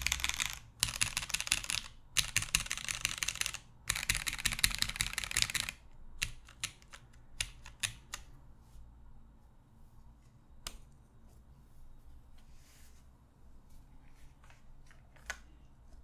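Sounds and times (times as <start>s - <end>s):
fast typing on mechanical keyboard: 0.0s - 8.2s.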